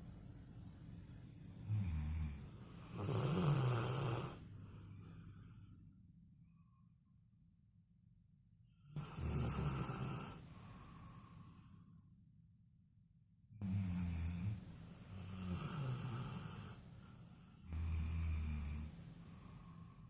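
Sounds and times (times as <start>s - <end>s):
dog snoring loudly: 1.6s - 4.4s, 9.0s - 10.4s, 13.6s - 16.8s, 17.7s - 18.9s.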